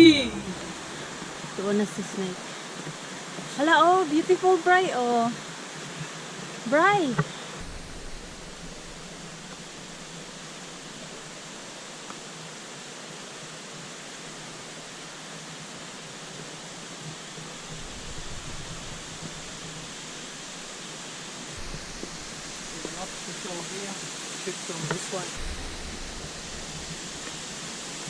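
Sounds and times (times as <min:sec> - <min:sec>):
low rumble: 0:00.0 - 0:03.1, 0:07.6 - 0:11.7, 0:17.4 - 0:23.9, 0:25.3 - 0:28.0
creek water rushing: 0:00.0 - 0:28.0.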